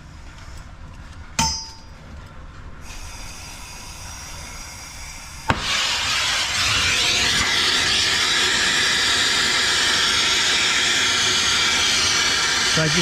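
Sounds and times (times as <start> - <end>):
metallic clink: 1.4 - 2.0
soldering torch flame hissing: 2.8 - 13.0
torch ignition click: 5.4 - 13.0.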